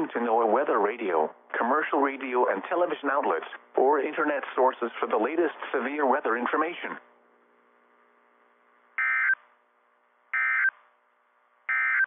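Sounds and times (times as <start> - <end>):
faint steady hum: 0.0 - 12.0
buzzy digital data tones: 9.0 - 9.4, 10.3 - 10.7, 11.7 - 12.0.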